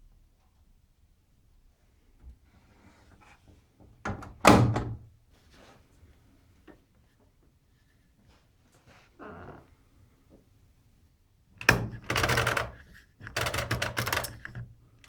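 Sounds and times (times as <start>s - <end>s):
washing machine door thunk: 4.1s - 5.0s.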